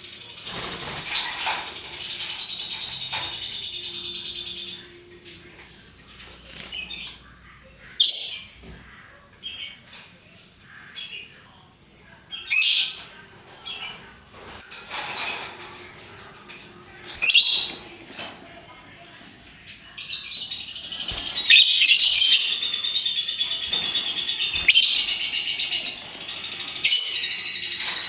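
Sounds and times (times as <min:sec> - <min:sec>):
lovebirds chattering trill: 0:19.8 - 0:28.0
lovebirds shrill chirps: 0:20.0 - 0:28.0.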